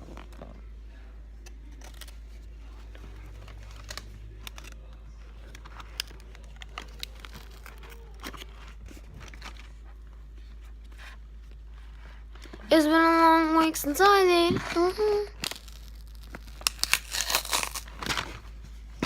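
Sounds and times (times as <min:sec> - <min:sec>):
steady low hum: 0:00.0 - 0:19.0
light crinkling: 0:01.4 - 0:12.8.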